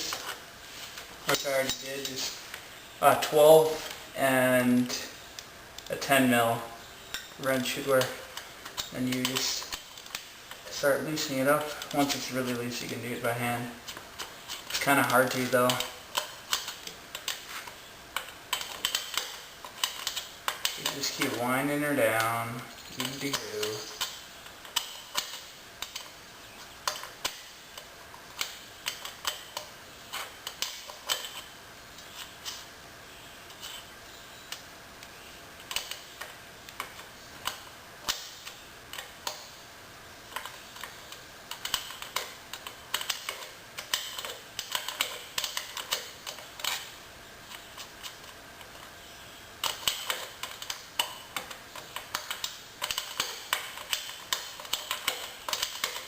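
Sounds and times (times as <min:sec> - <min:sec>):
metal wrench clicking on bolts: 0:49.6 - 0:56.0.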